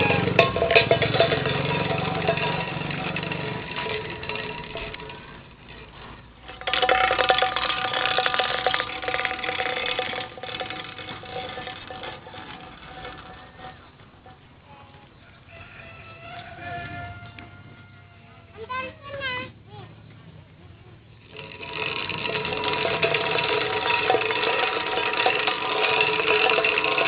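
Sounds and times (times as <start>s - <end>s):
noisemaker rapid rattling: 0.0s - 14.6s, 21.2s - 27.0s
low hum: 0.0s - 15.2s.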